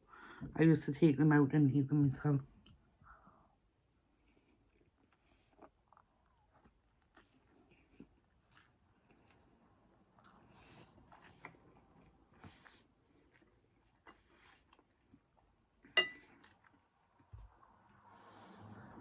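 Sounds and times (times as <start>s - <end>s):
person chewing: 4.5s - 18.0s.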